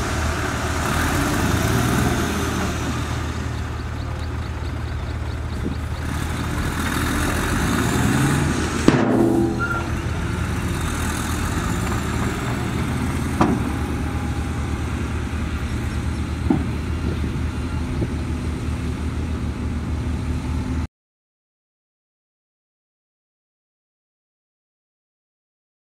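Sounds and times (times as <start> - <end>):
diesel machinery running: 0.0 - 20.9
sharp metallic knocks: 8.8 - 10.2, 13.2 - 14.0.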